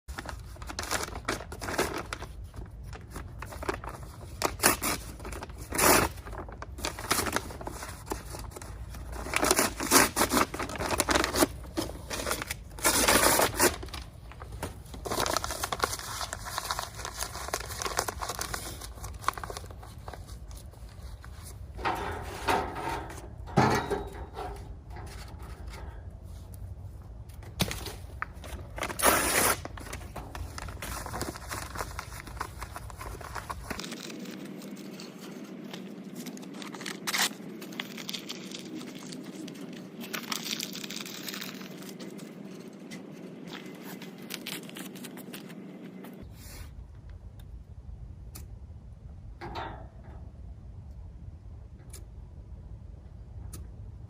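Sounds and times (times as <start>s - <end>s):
low steady rumble: 13.7s - 44.5s, 45.3s - 54.0s.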